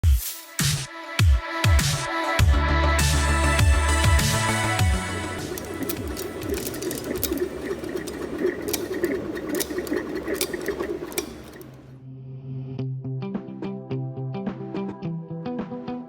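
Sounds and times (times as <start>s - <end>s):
machine clattering: 5.2s - 12.0s.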